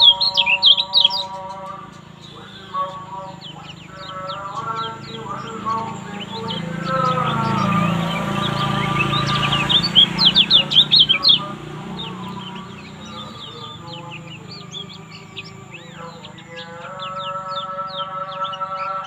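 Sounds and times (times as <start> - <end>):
bird singing rapid high chirps: 0.0 - 19.0.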